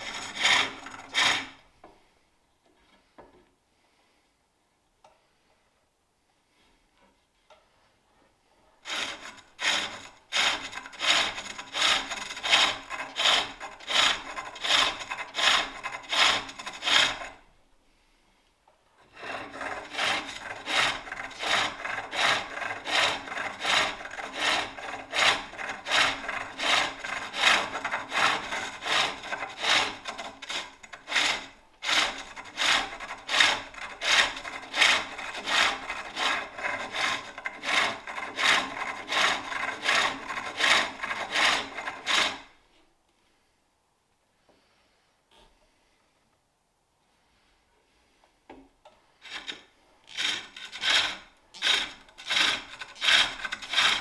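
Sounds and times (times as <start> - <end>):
tool scraping wood on a lathe: 0.0 - 1.7, 8.6 - 17.5, 19.0 - 42.7, 49.1 - 54.0.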